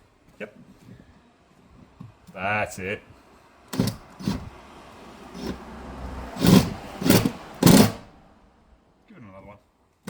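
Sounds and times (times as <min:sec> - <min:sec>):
impact wrench hammering: 0:03.7 - 0:04.5, 0:06.4 - 0:08.1.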